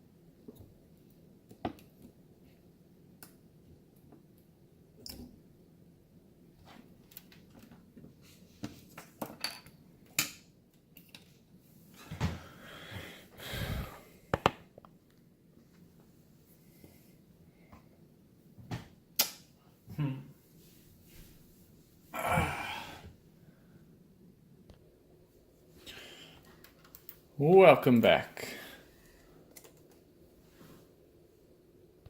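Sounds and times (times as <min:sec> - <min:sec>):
clicks of small parts and tools: 0:05.0 - 0:05.3, 0:09.0 - 0:11.4.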